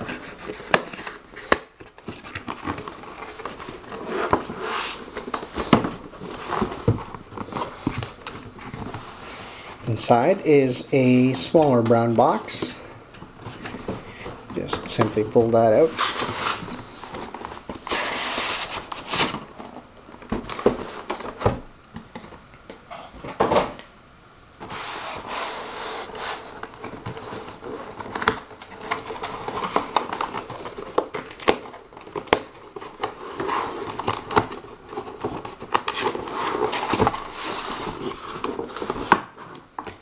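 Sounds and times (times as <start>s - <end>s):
plastic wrapping crinkling: 25.1s - 40.0s.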